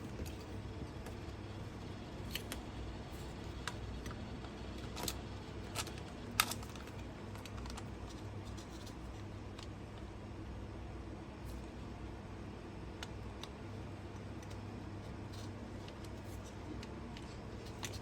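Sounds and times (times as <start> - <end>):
low steady hum: 0.0 - 18.0
plastic parts clicking and tapping: 4.8 - 10.0, 13.0 - 18.0.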